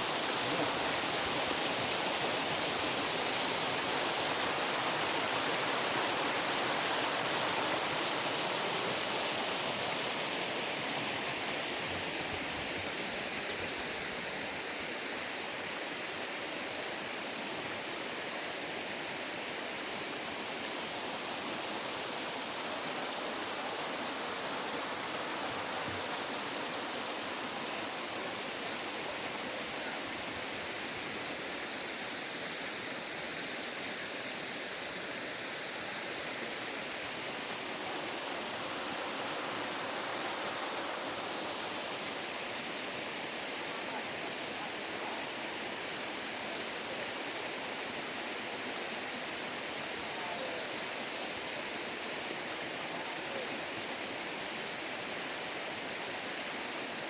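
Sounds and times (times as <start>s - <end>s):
waterfall roaring: 0.0s - 14.6s, 20.1s - 48.0s.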